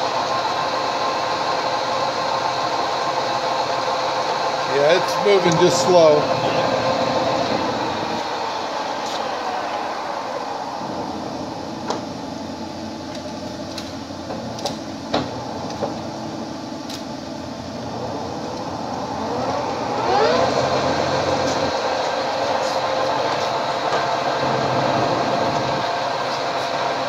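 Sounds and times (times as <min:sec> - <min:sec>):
rising machine whine: 0:00.0 - 0:14.1, 0:15.0 - 0:27.0
lathe gearing hum: 0:00.0 - 0:27.0.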